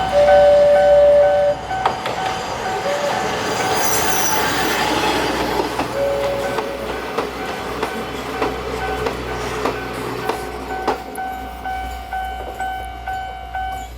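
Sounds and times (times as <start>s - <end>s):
crossing warning bell ringing: 0.0s - 13.9s
railcar running noise: 0.0s - 13.9s
wheel squeal: 2.3s - 6.5s.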